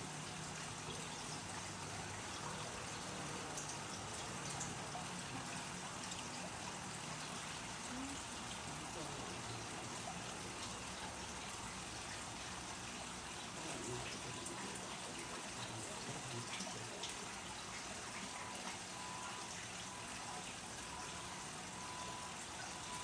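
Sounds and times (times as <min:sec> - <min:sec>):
faint low voice murmuring: 0:07.8 - 0:09.9.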